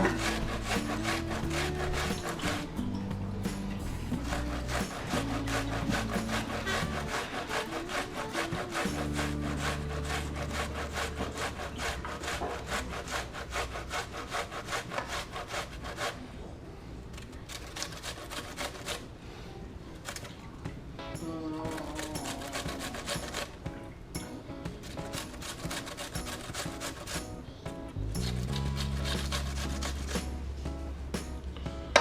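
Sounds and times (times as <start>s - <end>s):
onion rasping on a grater: 0.0s - 2.9s, 3.5s - 16.2s, 17.4s - 19.1s, 21.7s - 23.6s, 24.8s - 27.2s, 28.2s - 30.3s.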